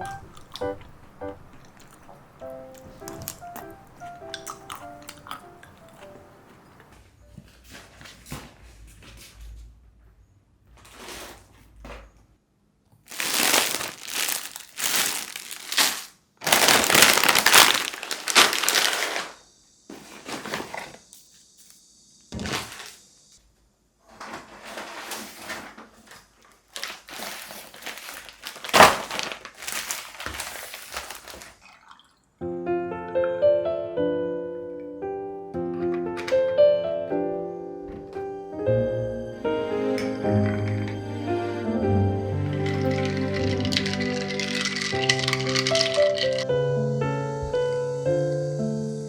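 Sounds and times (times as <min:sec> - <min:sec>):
crumpling and crinkling by hand: 0:00.0 - 0:09.6, 0:10.8 - 0:12.1, 0:13.0 - 0:19.4, 0:20.0 - 0:21.0, 0:22.4 - 0:23.0, 0:24.0 - 0:32.2, 0:42.4 - 0:46.5.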